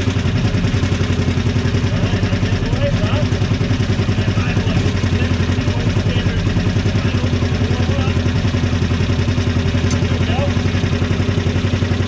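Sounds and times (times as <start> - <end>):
vehicle engine idling: 0.0 - 12.0.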